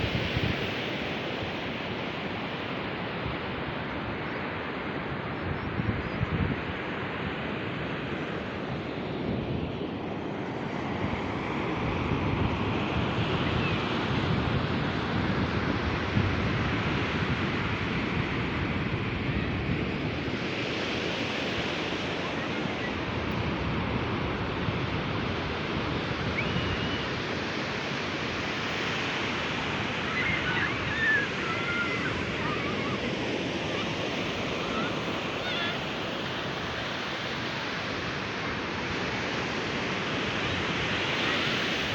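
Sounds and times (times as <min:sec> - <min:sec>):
sea surf breaking on beach: 0:00.0 - 0:05.3, 0:06.5 - 0:41.9
faint high cries: 0:29.9 - 0:36.2.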